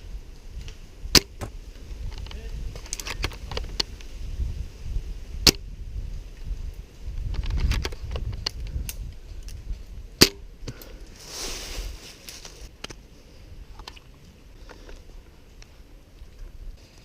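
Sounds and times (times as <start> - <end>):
airsoft gunfire pops and clicks: 1.1 - 1.5, 5.4 - 5.6, 10.2 - 10.4.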